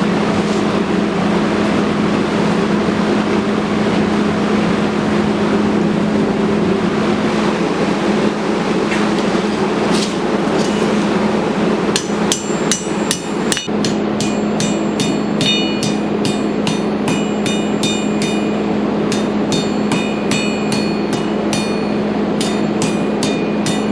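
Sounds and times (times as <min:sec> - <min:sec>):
hammer ringing on steel: 0:12.0 - 0:23.9.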